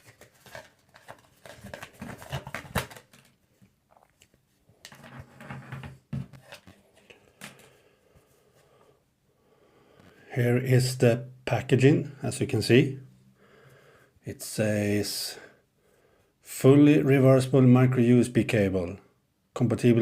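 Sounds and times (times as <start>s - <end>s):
packaging clicks and taps: 0.0s - 3.4s
packaging rustling: 0.0s - 3.7s, 6.3s - 7.8s.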